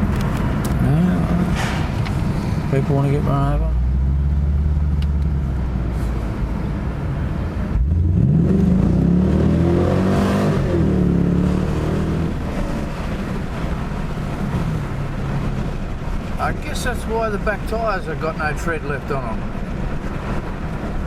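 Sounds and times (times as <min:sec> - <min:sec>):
car engine accelerating: 0:00.0 - 0:16.8.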